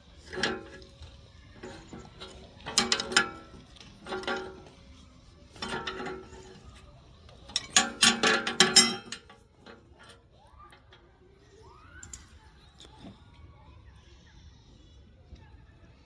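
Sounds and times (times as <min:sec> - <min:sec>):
metal pieces clanking: 0:05.5 - 0:06.6, 0:07.4 - 0:10.1.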